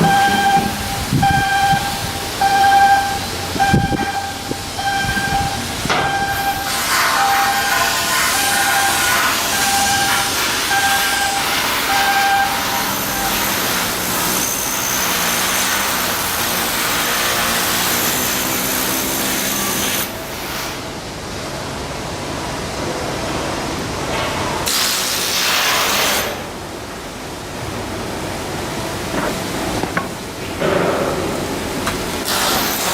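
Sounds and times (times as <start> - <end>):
repeating electronic beep: 0.0 - 7.8
steady loud hiss: 0.0 - 32.9.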